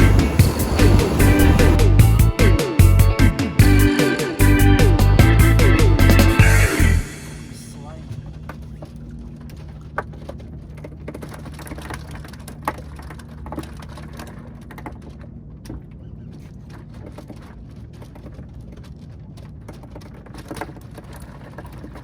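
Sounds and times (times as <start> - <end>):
low motor hum: 0.0 - 3.8.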